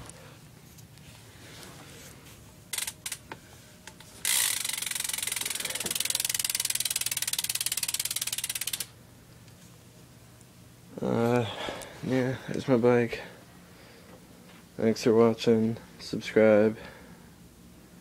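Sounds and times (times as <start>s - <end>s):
bicycle hub ratcheting clicks: 2.7s - 9.0s.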